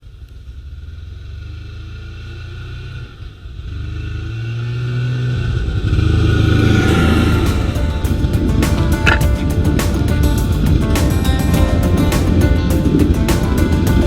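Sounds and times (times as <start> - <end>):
snowmobile engine speeding up: 0.4 - 7.8.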